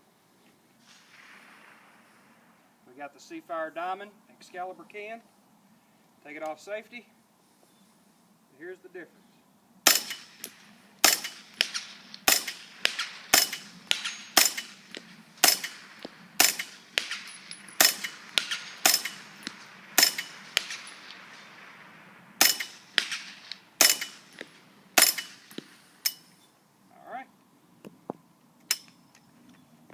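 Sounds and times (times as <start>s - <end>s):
suppressed gunshots: 9.8s - 26.2s.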